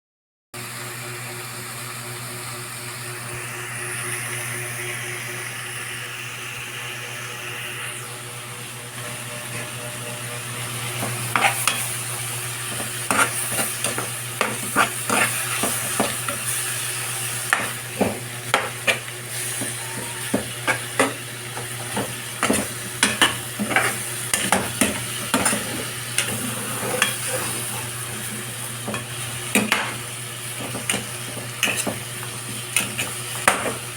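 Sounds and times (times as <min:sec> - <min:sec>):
food sizzling in oil: 0:10.4 - 0:33.9
metal utensil scraping pan: 0:11.0 - 0:28.2, 0:28.8 - 0:33.9.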